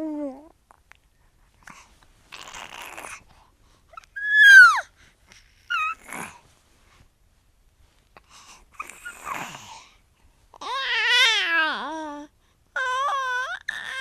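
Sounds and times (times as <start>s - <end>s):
baby squealing and squeaking: 4.0s - 4.9s, 5.7s - 6.0s.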